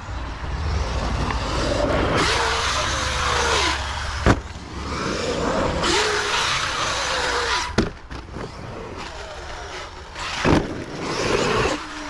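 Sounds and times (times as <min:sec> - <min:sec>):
electric motor whining: 0:00.6 - 0:12.0
toy truck impact: 0:10.2 - 0:11.4.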